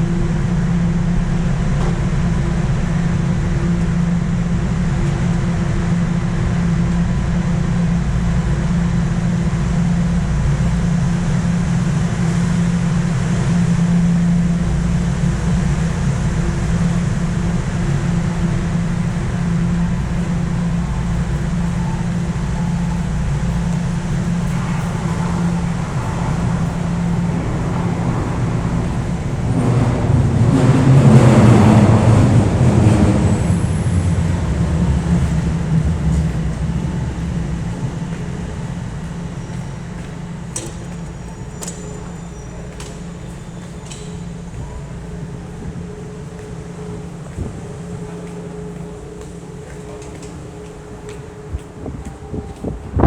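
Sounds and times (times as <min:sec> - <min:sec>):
subway train hum and rumble: 0:00.0 - 0:53.0.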